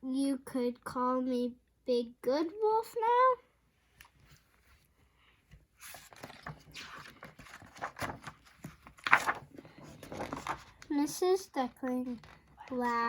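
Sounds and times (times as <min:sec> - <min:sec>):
paper rustling: 0:05.5 - 0:13.0.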